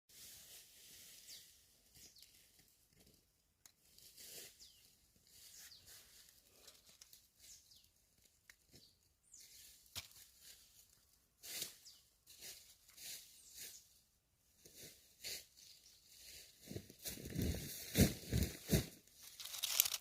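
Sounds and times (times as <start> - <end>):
rustling: 17.0 - 20.0.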